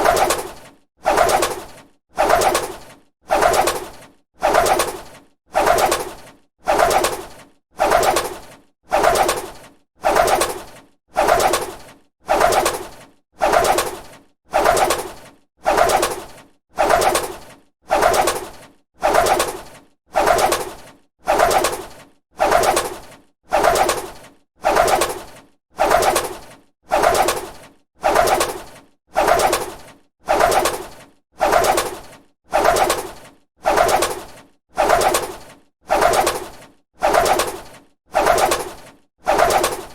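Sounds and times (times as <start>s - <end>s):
bird wings flapping: 0.0s - 39.9s.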